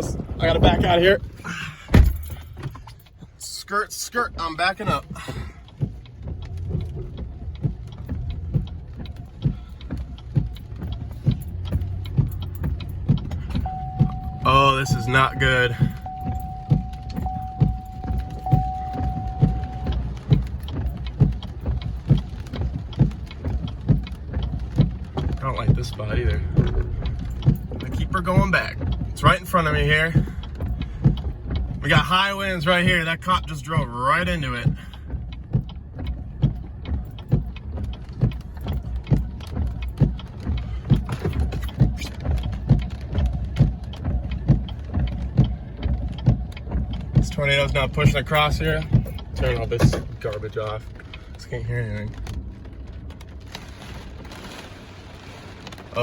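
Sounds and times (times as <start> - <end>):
truck cab low rumble: 0.0 - 56.0
regular knocking: 4.8 - 32.1
rhythmic thud: 4.8 - 51.1
light ticks: 4.9 - 32.2
high electronic tone: 13.6 - 20.0.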